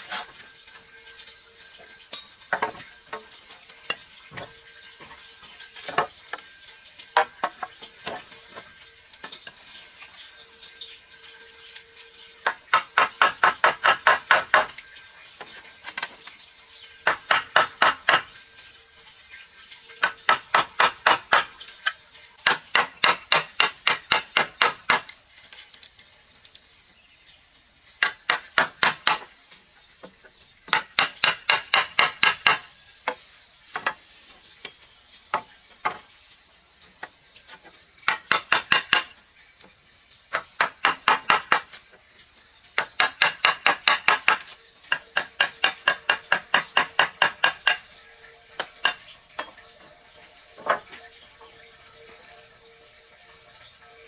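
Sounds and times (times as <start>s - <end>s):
hammer strikes on wood: 12.7s - 14.7s, 17.0s - 18.3s, 22.4s - 25.1s, 28.0s - 29.3s, 30.7s - 32.7s, 38.0s - 39.1s, 40.6s - 41.7s, 42.8s - 47.8s.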